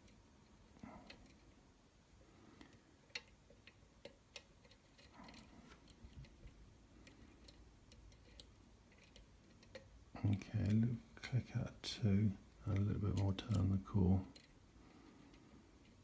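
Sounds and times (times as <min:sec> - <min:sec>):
lock pick clicking pins: 0:07.0 - 0:10.8.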